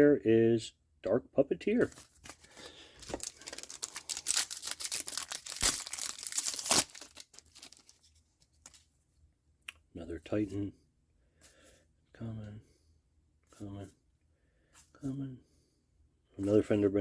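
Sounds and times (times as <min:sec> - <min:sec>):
foil pack tearing and crinkling: 0:02.2 - 0:08.0.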